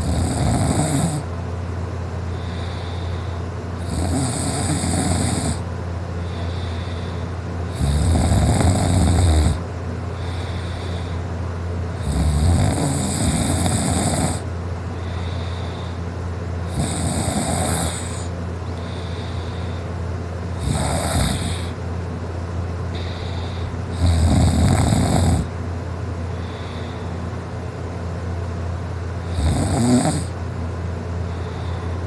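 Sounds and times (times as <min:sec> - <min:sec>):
man snoring loudly: 0:00.0 - 0:01.3, 0:03.8 - 0:05.7, 0:06.3 - 0:09.6, 0:12.0 - 0:16.0, 0:16.6 - 0:18.3, 0:20.5 - 0:21.8, 0:23.0 - 0:25.5, 0:29.3 - 0:30.4
steady low hum: 0:00.0 - 0:32.0.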